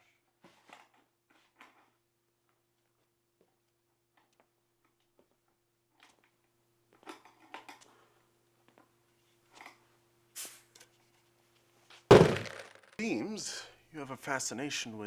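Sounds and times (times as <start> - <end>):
sudden loud hit: 12.1 - 12.7.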